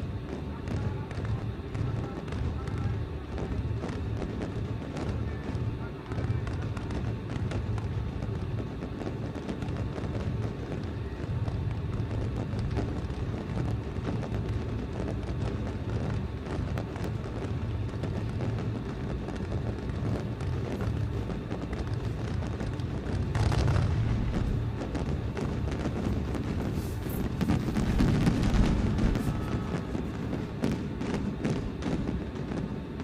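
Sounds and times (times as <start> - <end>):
fireworks crackling: 0.0 - 33.0
loud fireworks burst: 0.0 - 33.0
rumble of fireworks booms: 0.0 - 33.0.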